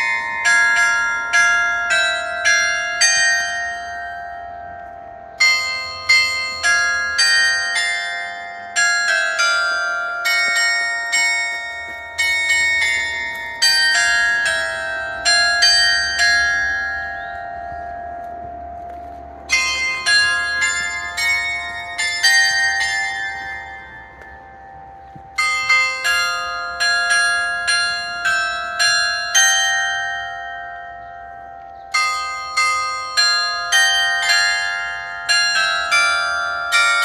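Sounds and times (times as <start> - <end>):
bell chime melody: 0.0 - 37.0.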